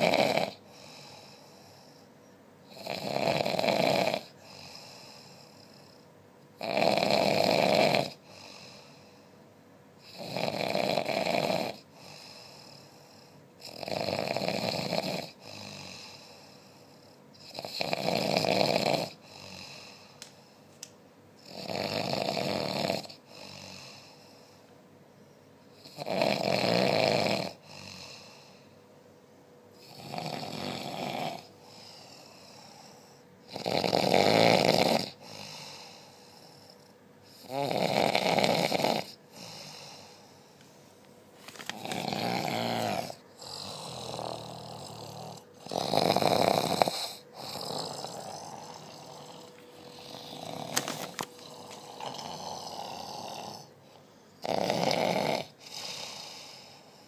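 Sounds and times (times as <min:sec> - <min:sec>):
man snoring loudly: 0:00.0 - 0:01.5, 0:02.7 - 0:06.0, 0:06.6 - 0:09.0, 0:10.0 - 0:20.1, 0:21.4 - 0:24.2, 0:25.8 - 0:28.6, 0:29.8 - 0:40.4, 0:41.7 - 0:57.0
quiet breaths: 0:00.0 - 0:13.8, 0:14.5 - 0:18.1, 0:18.7 - 0:26.1, 0:27.5 - 0:57.0.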